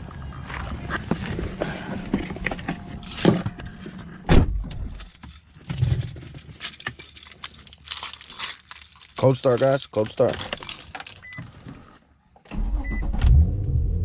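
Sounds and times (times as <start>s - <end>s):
car keys jangling: 4.8s - 12.0s.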